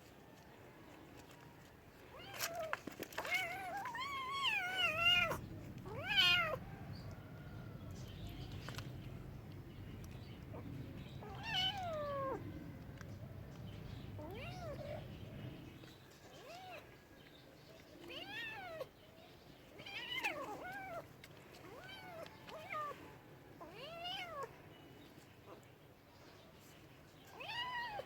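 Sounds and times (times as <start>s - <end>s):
cat meowing: 2.2s - 7.2s, 10.6s - 12.9s, 13.9s - 15.6s, 23.6s - 24.5s, 27.3s - 28.0s.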